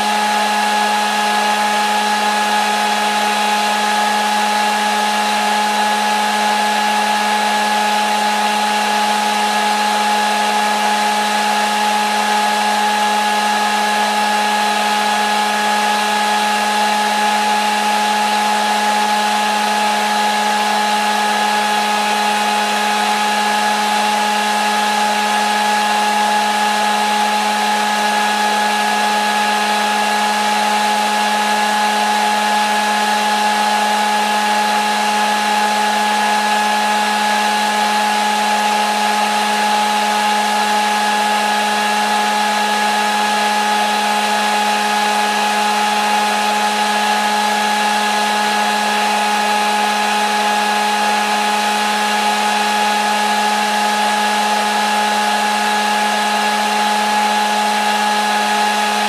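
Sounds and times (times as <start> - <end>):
hair dryer running: 0.0 - 59.0.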